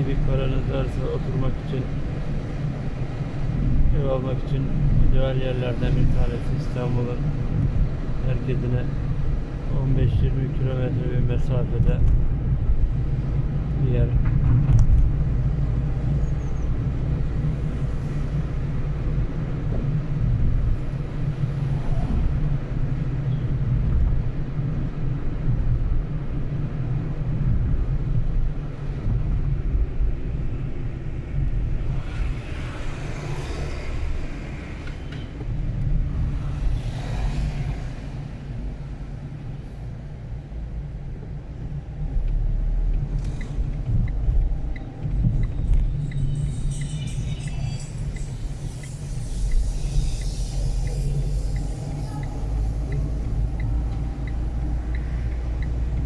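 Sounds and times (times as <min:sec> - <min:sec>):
road traffic rumble: 0:00.0 - 0:56.0
passing vehicles whooshing: 0:11.4 - 0:56.0.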